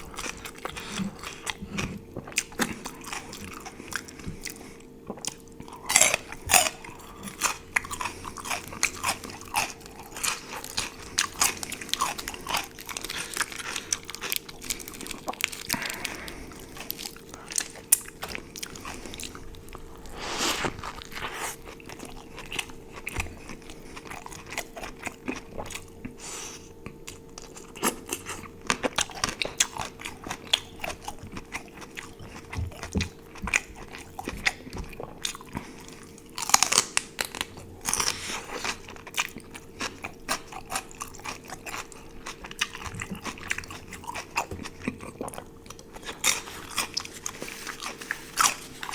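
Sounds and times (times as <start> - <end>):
person chewing crunchy food: 0.0 - 48.9.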